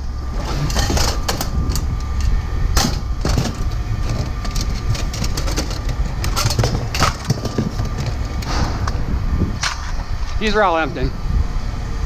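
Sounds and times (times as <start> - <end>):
steady low rumble: 0.0 - 12.0
scrap items knocking and clattering: 0.4 - 10.0.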